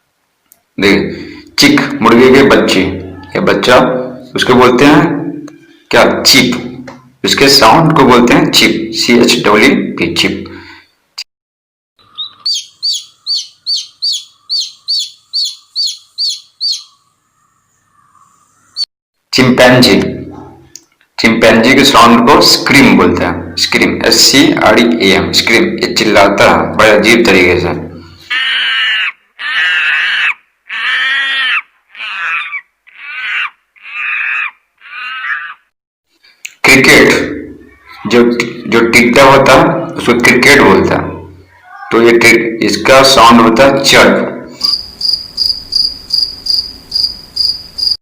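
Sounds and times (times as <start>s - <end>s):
chick peeping: 12.0s - 17.1s
chimpanzee screaming: 28.2s - 35.7s, 41.5s - 42.0s.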